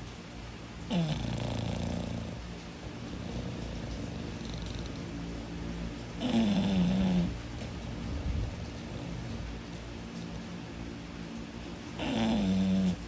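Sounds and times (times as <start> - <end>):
dog rumbling breaths: 0.0 - 13.0
dog snoring: 0.8 - 9.8, 11.9 - 13.0.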